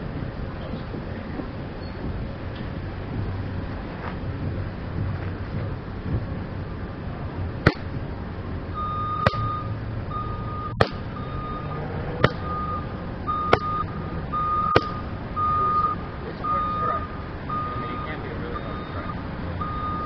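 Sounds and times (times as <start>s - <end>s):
low vehicle rumble: 0.0s - 20.0s
reversing alarm beeping: 8.7s - 20.0s.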